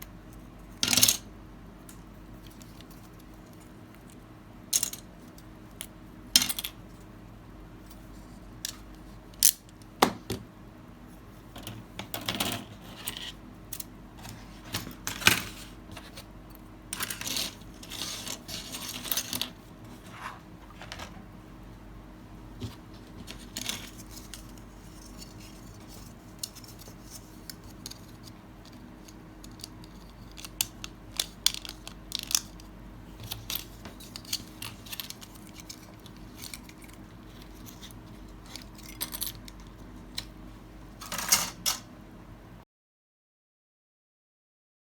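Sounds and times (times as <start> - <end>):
plastic parts clicking and tapping: 26.4 - 37.9.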